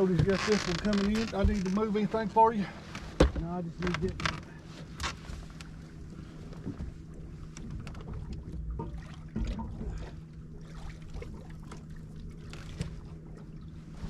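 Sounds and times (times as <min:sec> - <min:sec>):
boat motor humming: 0:00.0 - 0:14.0
light knocks on boat: 0:03.1 - 0:03.5.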